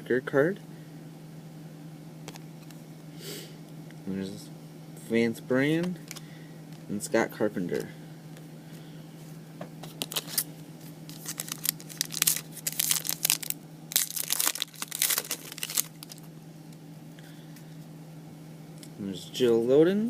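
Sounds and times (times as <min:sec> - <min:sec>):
steady low hum: 0:00.0 - 0:20.0
foil wrapper tearing and crinkling: 0:09.9 - 0:10.5, 0:11.1 - 0:16.3.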